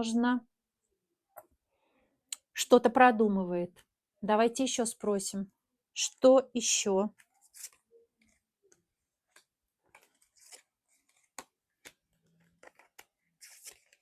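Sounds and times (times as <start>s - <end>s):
tarot cards clicking and tapping: 7.1s - 14.0s.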